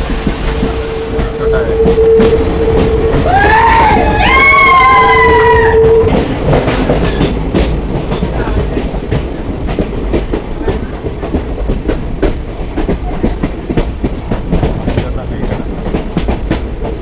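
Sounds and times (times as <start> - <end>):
low train rumble: 0.0 - 17.0
train wheels clattering over rail joints: 0.0 - 17.0
held tone: 0.5 - 4.1.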